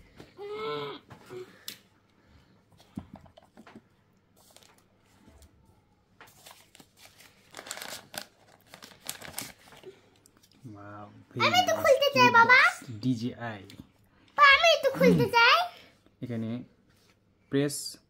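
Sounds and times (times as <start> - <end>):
packaging rustling and crinkling: 6.2 - 9.9.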